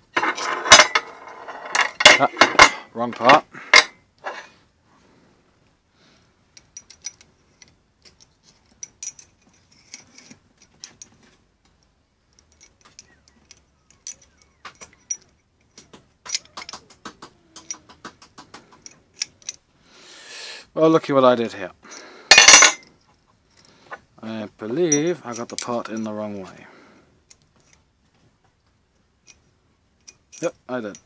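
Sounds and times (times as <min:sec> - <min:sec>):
small metal parts clicking: 0:00.2 - 0:03.9, 0:06.6 - 0:19.6, 0:21.9 - 0:23.7, 0:24.8 - 0:26.2, 0:30.0 - 0:31.0.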